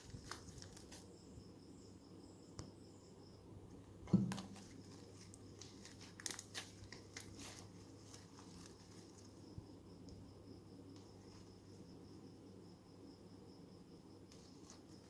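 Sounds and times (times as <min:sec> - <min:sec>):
plastic bag crinkling: 0:00.0 - 0:01.0, 0:04.5 - 0:09.3
knock: 0:04.1 - 0:04.5.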